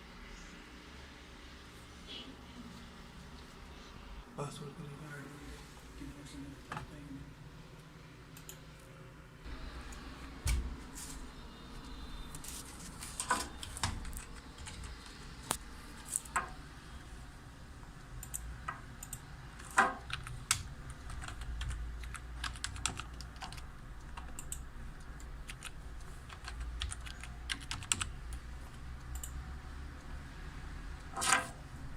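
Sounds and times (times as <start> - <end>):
keyboard typing clicks: 18.2 - 28.4, 29.0 - 29.4.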